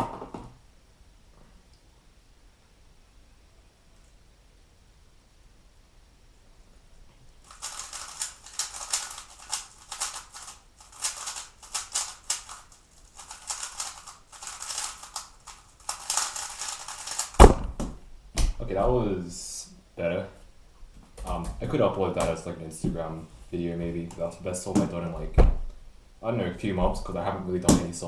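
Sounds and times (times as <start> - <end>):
puzzle cube plastic clicking: 7.5 - 17.4
sharp knock: 17.4 - 18.6.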